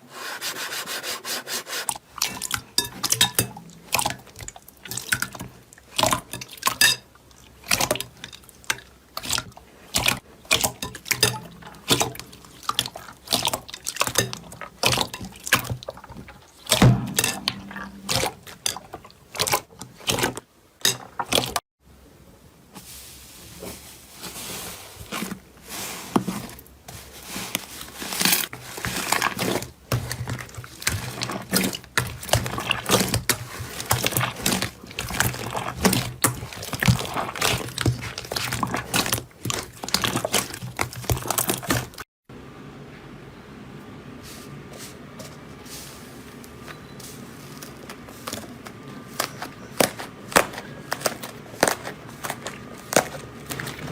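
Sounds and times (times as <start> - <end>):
slime squelching and popping: 28.8 - 42.0, 47.6 - 53.9.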